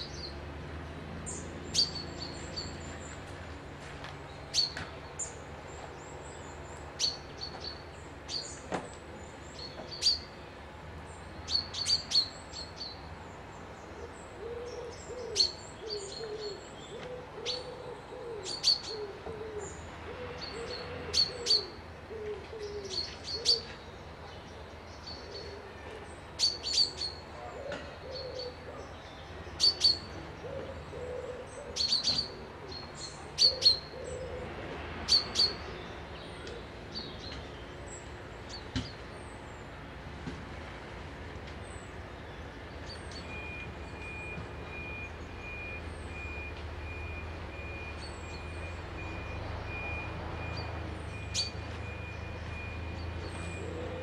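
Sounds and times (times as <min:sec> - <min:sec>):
birds chirping and whistling: 0:01.3 - 0:03.1, 0:31.8 - 0:34.3, 0:35.1 - 0:39.0, 0:42.8 - 0:54.0.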